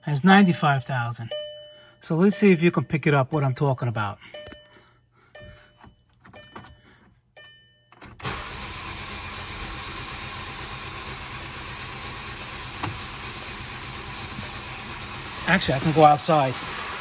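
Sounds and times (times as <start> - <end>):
dashboard chime tones: 0.0 - 7.9, 13.4 - 16.6
starter cranking engine: 8.0 - 17.0.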